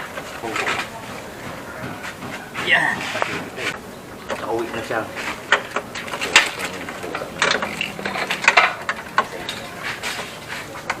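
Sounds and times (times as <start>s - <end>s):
metallic clicks and rattles of cable: 5.5s - 9.8s.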